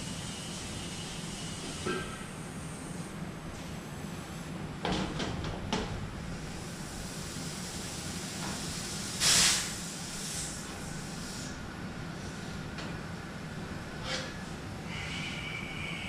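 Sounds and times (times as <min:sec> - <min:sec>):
air conditioner humming: 0:01.9 - 0:16.0
hiss of escaping gas: 0:06.6 - 0:11.6.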